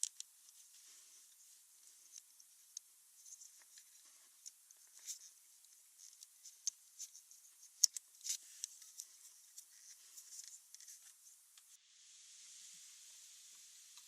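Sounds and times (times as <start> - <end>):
steady hiss: 0.0 - 14.0.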